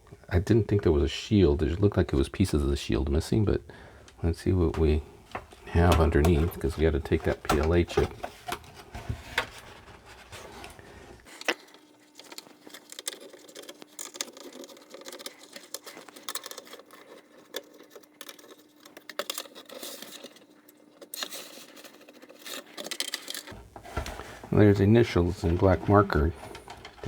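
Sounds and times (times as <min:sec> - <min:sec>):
faint steady hum: 0:00.0 - 0:27.0
metal parts clicking and rattling: 0:11.3 - 0:23.6.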